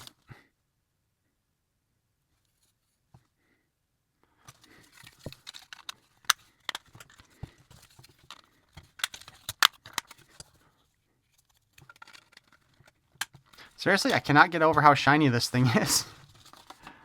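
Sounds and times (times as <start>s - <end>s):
plastic parts clicking: 4.5s - 10.6s, 11.4s - 15.0s, 15.7s - 16.9s.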